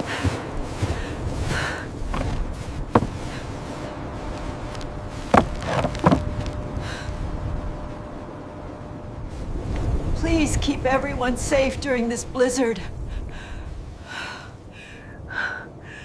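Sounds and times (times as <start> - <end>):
steady low rumbling: 0.0 - 16.0
sharp knocks: 5.3 - 6.3.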